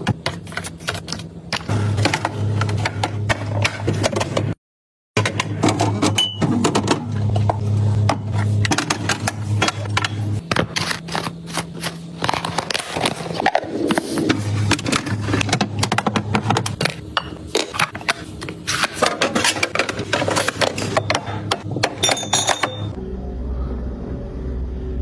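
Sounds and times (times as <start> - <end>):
plastic containers clicking and scraping: 5.2 - 21.7
low hum: 19.6 - 25.0.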